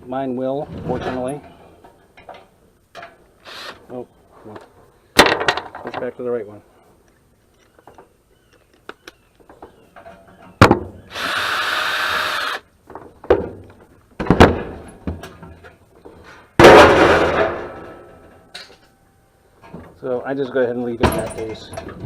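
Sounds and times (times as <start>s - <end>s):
power drill running: 11.1s - 12.6s
loud metallic crash: 16.6s - 18.1s
metal knocks and clanks: 20.8s - 22.0s.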